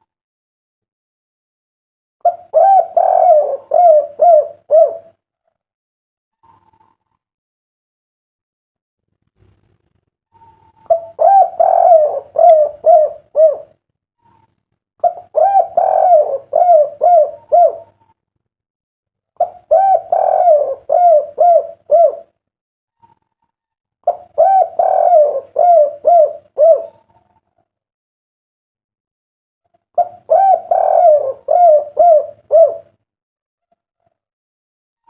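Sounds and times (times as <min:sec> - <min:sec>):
dove cooing: 0:02.2 - 0:05.2, 0:10.3 - 0:18.2, 0:19.4 - 0:22.3, 0:24.0 - 0:27.6, 0:30.0 - 0:33.0.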